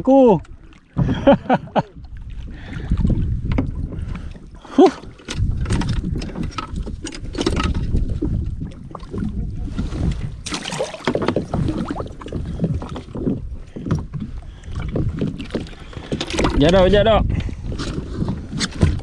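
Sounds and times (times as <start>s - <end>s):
wind rumbling on microphone: 0.0s - 19.0s
knocks and clicks from gear: 5.2s - 8.0s.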